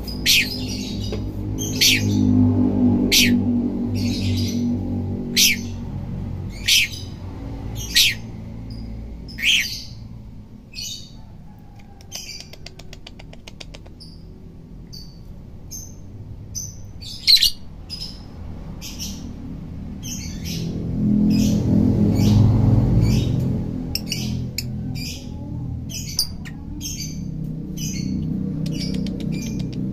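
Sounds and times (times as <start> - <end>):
bird high chirps: 0.0 - 2.3, 3.1 - 5.8, 6.5 - 7.1, 7.7 - 10.0.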